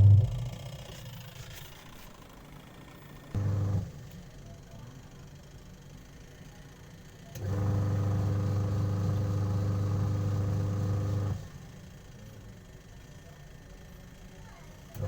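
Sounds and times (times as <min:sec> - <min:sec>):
washing machine motor hum: 0:00.0 - 0:01.3.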